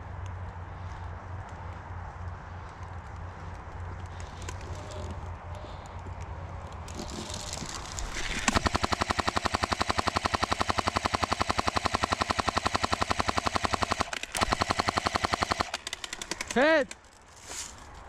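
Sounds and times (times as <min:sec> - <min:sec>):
airsoft gun full-auto burst: 0:06.9 - 0:16.8.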